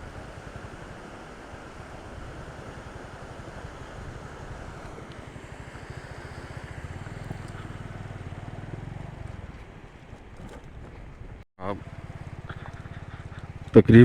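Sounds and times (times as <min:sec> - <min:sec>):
motorcycle engine running: 0:00.0 - 0:14.0
wind and road noise: 0:00.0 - 0:14.0.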